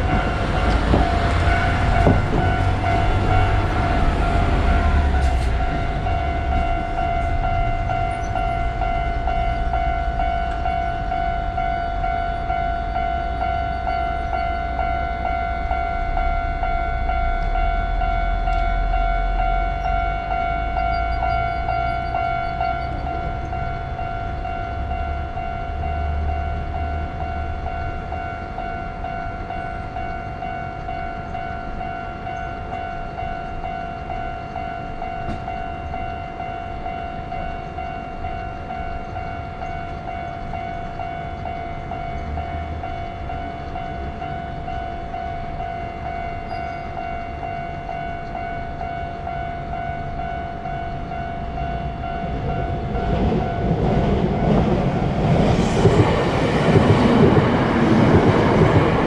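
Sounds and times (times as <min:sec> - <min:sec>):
level crossing warning bell ringing: 0:00.0 - 0:59.0
train rumbling past: 0:00.0 - 0:59.0.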